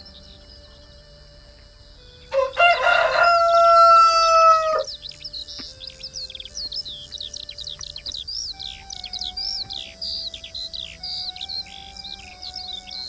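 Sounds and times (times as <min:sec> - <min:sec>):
small birds chirping: 0:00.0 - 0:13.0
rooster crowing: 0:02.3 - 0:04.9.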